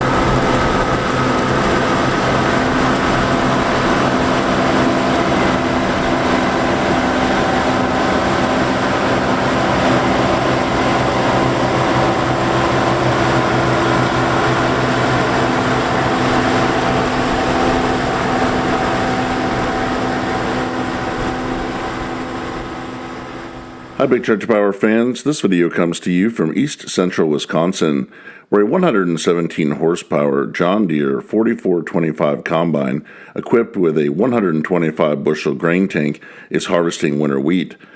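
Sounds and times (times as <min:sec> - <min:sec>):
combine harvester running: 0:00.0 - 0:24.4.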